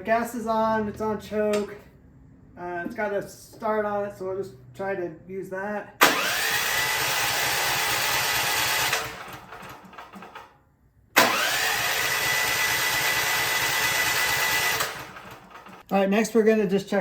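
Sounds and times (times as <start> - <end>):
electric starter cranking engine: 6.0 - 10.6, 11.2 - 15.8.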